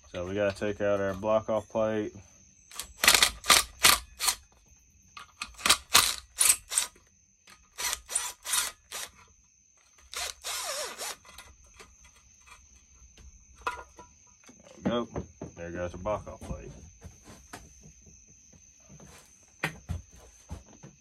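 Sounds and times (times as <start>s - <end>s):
ratchet wrench clicking: 2.7s - 4.4s, 5.2s - 9.2s.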